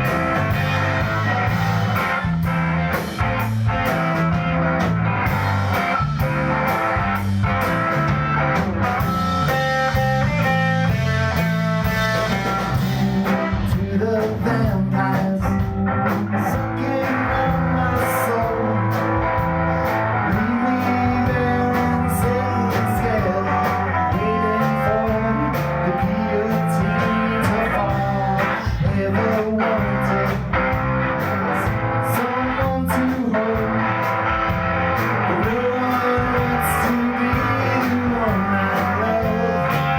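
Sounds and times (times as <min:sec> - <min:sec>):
bass: 0:00.0 - 0:39.9
drums: 0:00.0 - 0:39.9
electric guitar: 0:00.0 - 0:39.9
person singing: 0:12.7 - 0:34.2, 0:35.1 - 0:39.9.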